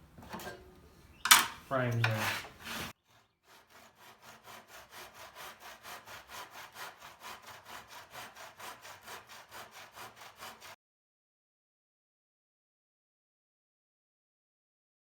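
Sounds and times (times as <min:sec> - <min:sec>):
hand saw cutting wood: 0:01.4 - 0:10.8.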